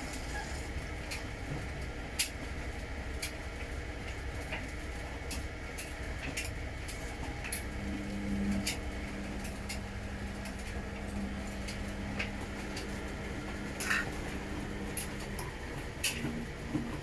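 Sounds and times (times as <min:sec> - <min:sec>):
washing machine motor hum: 0:00.0 - 0:17.0
washing machine rattle: 0:08.6 - 0:17.0.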